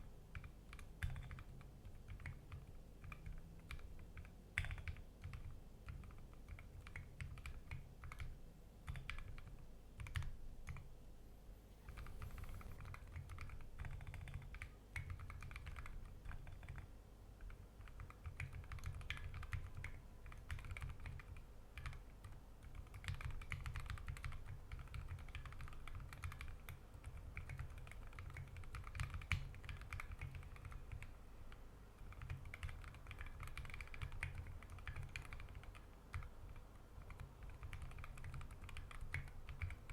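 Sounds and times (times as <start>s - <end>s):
fast typing on mechanical keyboard: 0.3s - 10.9s, 11.9s - 39.9s.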